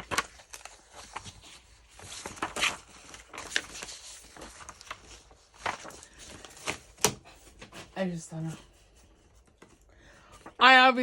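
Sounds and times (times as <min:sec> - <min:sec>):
paper rustling: 0:00.0 - 0:11.0.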